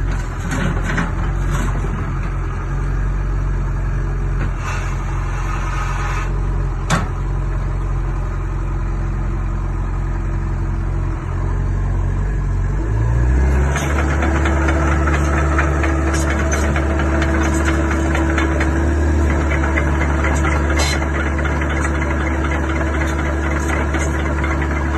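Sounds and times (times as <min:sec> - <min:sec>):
diesel engine running: 0:00.0 - 0:24.9.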